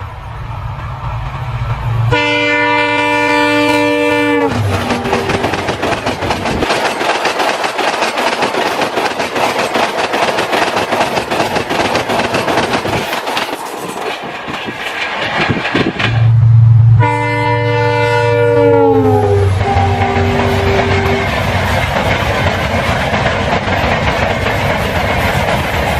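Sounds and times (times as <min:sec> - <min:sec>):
locomotive engine hum: 0:00.0 - 0:25.9
train horn: 0:02.0 - 0:05.7, 0:16.3 - 0:21.4
train wheels clattering over rail joints: 0:04.4 - 0:16.4, 0:19.6 - 0:25.9.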